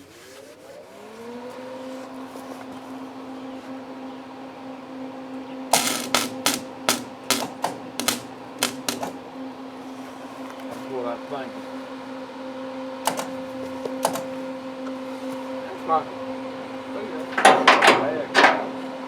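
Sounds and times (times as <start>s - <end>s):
crackling arc bursts: 5.7s - 9.2s
welder humming: 5.7s - 9.3s.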